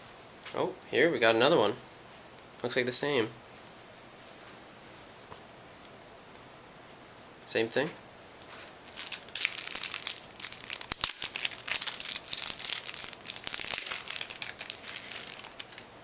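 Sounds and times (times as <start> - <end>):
plastic packaging crinkling: 8.8 - 16.0.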